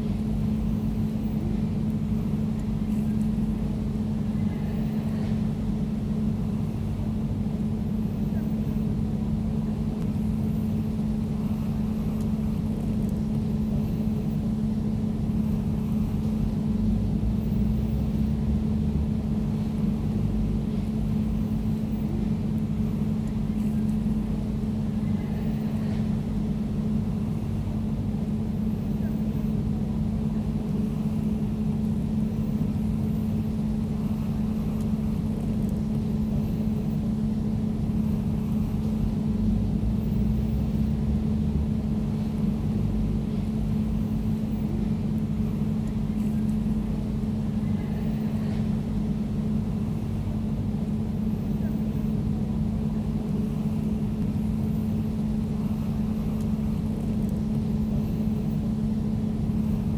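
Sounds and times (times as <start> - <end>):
air conditioner humming: 0.0 - 59.9.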